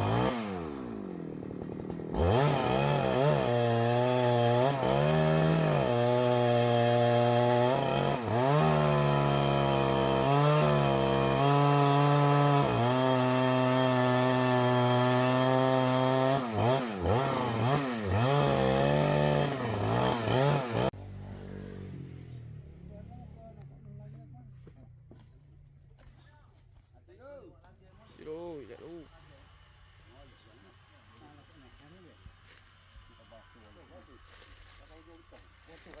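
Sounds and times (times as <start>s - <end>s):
chainsaw cutting tree trunk: 0.0s - 21.0s.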